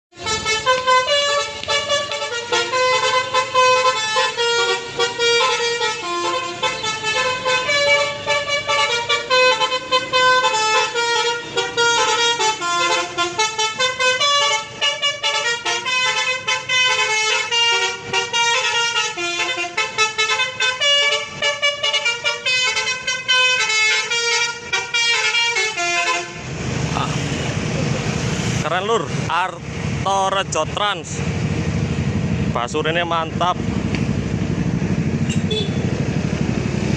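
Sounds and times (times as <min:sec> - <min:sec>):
multi-tone musical bus horn: 0:00.1 - 0:26.6, 0:35.2 - 0:36.0
vehicle and road noise: 0:00.1 - 0:36.9.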